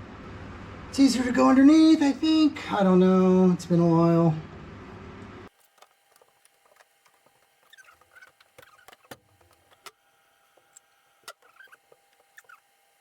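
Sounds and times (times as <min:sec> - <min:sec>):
short squeaks of parts: 0:07.6 - 0:09.9, 0:11.2 - 0:12.7.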